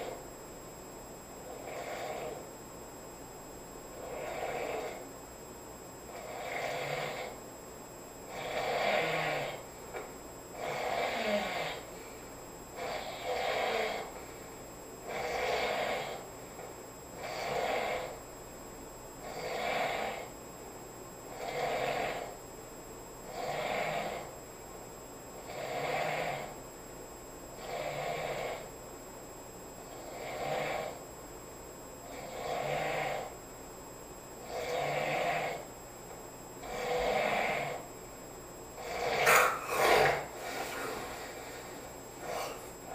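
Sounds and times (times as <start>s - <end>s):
person snoring: 1.5s - 2.4s, 4.0s - 5.0s, 6.1s - 7.4s, 8.3s - 9.6s, 10.6s - 11.9s, 12.8s - 14.1s, 15.1s - 16.2s, 32.1s - 33.3s, 34.4s - 35.7s, 36.6s - 37.8s, 38.8s - 42.9s.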